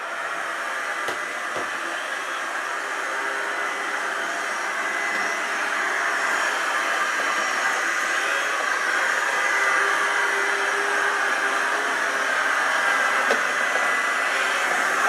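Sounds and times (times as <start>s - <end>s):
robot vacuum cleaner running: 0.0s - 15.0s.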